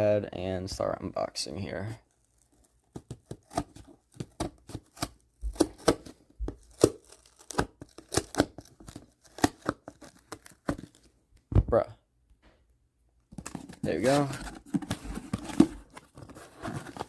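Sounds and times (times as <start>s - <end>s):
cardboard box clicks and knocks: 13.3s - 17.0s.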